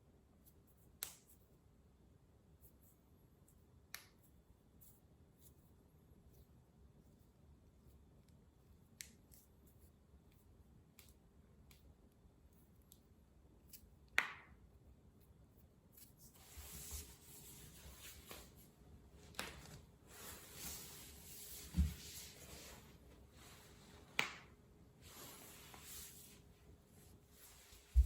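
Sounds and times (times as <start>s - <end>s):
rustling of clothing and skin: 15.9s - 28.0s.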